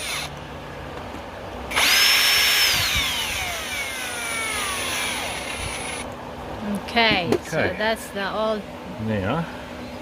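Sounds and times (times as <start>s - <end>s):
small electric motor whining: 0.0s - 0.4s, 1.7s - 6.1s.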